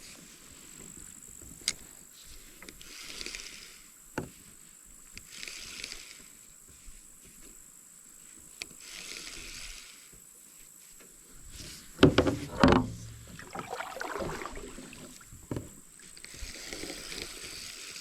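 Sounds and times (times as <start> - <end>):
paddle strokes splashing water: 11.6 - 16.4
paddle knocking hull: 12.0 - 15.8.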